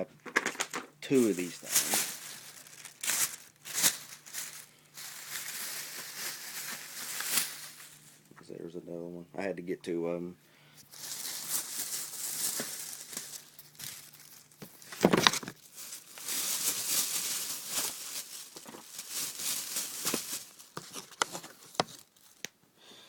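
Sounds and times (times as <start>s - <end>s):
plastic bags rustling: 0.0s - 8.3s, 10.8s - 22.5s.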